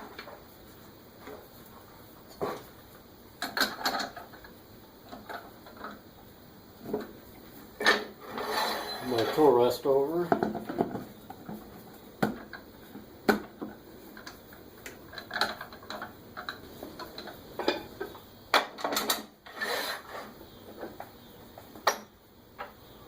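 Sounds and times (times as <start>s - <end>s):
brief scrape: 8.2s - 9.4s, 19.5s - 20.4s
tools knocking and clanking: 10.3s - 12.6s, 13.3s - 14.3s, 15.1s - 19.3s, 20.7s - 22.8s.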